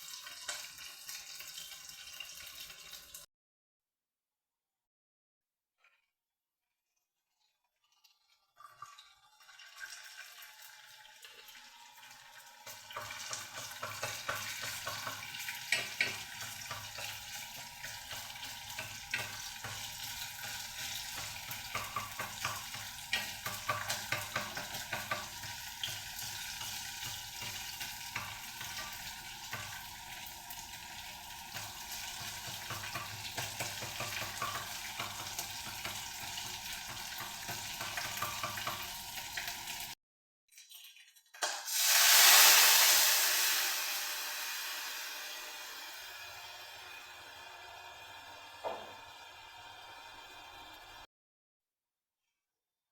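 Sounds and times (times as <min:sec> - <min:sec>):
food sizzling in a frying pan: 0:00.0 - 0:03.3, 0:09.2 - 0:40.0, 0:41.4 - 0:51.1
utensil clicking against pan: 0:12.7 - 0:30.0, 0:31.4 - 0:39.8.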